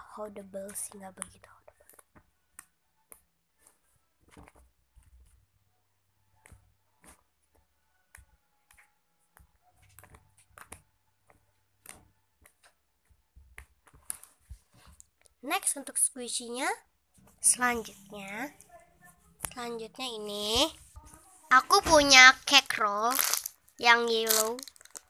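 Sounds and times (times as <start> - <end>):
slime clicking and popping: 23.1 - 25.0.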